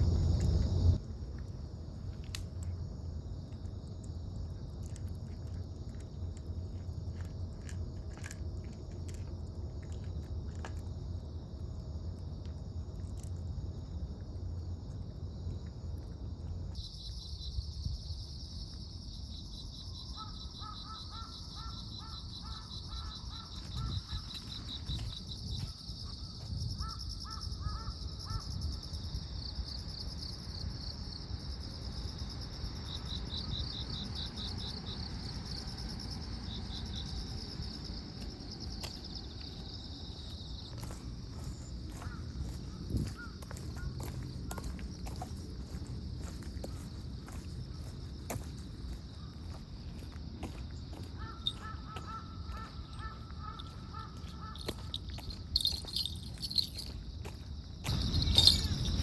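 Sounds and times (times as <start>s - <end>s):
low rumble of wind: 0.0s - 20.6s, 21.4s - 59.0s
insects trilling: 0.0s - 59.0s
crow cawing: 20.2s - 24.2s, 51.2s - 54.7s.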